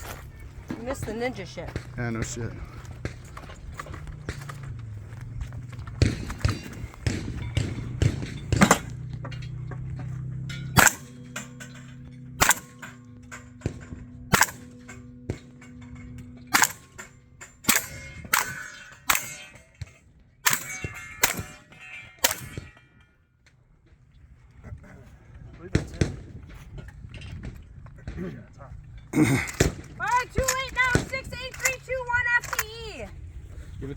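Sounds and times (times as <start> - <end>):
shotgun shots: 5.9 - 9.1, 10.5 - 22.8, 29.2 - 32.8
steel targets ringing: 6.0 - 23.3.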